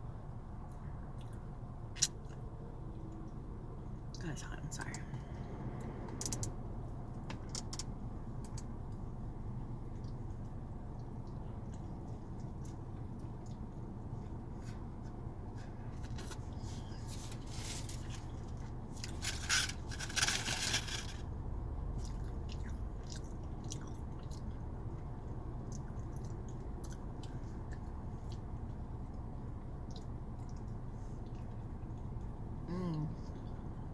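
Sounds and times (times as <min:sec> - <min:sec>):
steady low hum: 0:00.0 - 0:33.9
person chewing food: 0:08.6 - 0:17.2, 0:22.0 - 0:32.6
rustling: 0:16.2 - 0:21.2.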